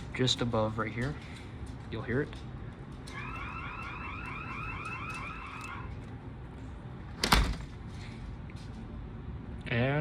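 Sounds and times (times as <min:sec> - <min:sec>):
warbling alarm siren: 0:03.1 - 0:06.1.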